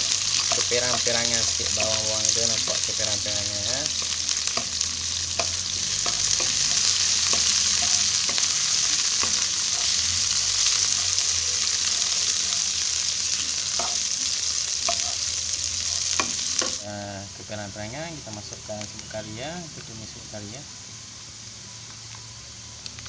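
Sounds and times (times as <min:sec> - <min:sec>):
utensil stirring in a pan: 0:00.0 - 0:16.8
onions sizzling in hot oil: 0:00.0 - 0:23.0.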